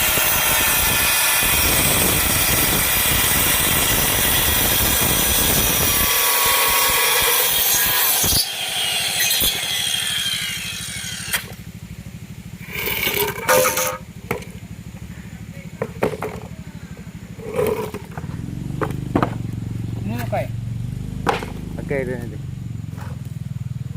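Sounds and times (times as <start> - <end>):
circular saw cutting plywood: 0.0 - 11.6, 12.6 - 14.0, 17.4 - 20.2
knocks and clatters: 15.8 - 16.6, 17.5 - 19.5.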